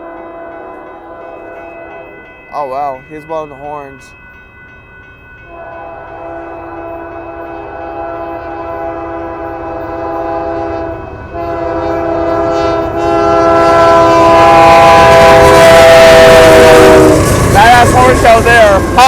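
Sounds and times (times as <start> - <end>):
locomotive air horn chord: 0.0 - 2.2, 5.5 - 17.4
train rumbling: 0.0 - 19.0.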